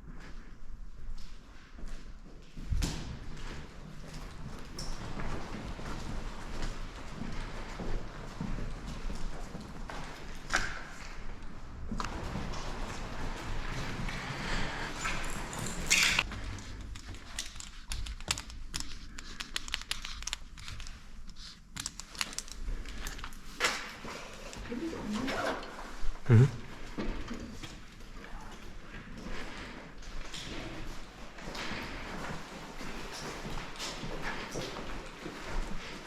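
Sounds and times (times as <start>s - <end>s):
footsteps on a hard floor: 1.1s - 17.2s
light clicks and crackles: 13.8s - 24.8s.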